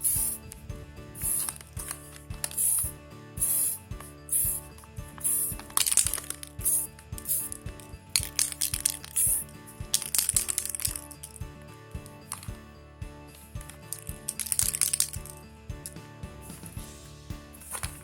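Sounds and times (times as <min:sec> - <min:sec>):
hissing scratching stroke: 0:00.0 - 0:00.6, 0:01.2 - 0:07.6, 0:08.2 - 0:11.1
background music with steady pulse: 0:00.0 - 0:18.0.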